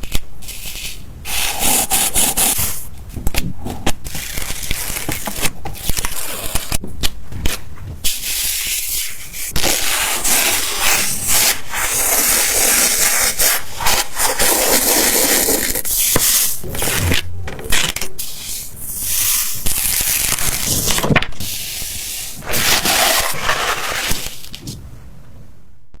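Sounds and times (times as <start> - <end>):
sand scraping on a surface: 21.6 - 24.5.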